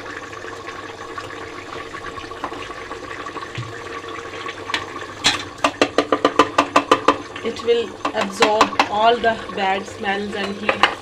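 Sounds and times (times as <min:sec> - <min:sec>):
pot simmering with hiss: 0:00.0 - 0:11.0
spoon clacking against metal pot: 0:05.6 - 0:07.2, 0:08.0 - 0:09.0.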